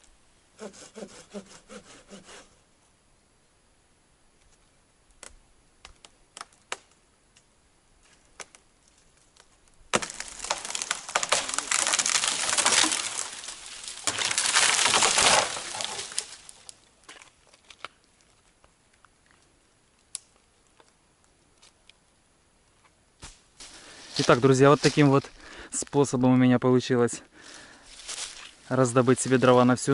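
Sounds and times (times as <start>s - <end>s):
branches rustling: 4.4s - 22.1s, 22.7s - 26.2s, 27.4s - 29.9s
dry branches snapping: 5.2s - 18.3s.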